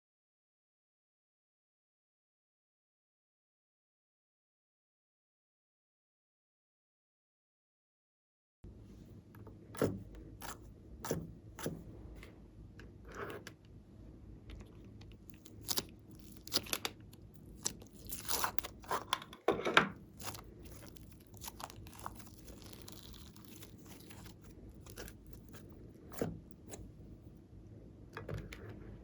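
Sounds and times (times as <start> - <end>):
crinkling and crunching handling: 14.4 - 26.9.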